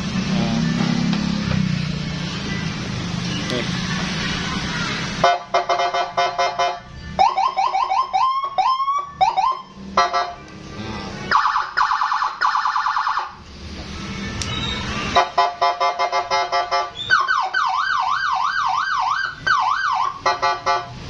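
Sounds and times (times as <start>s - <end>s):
electronic siren cycling tones: 5.7s - 10.3s, 17.0s - 20.2s.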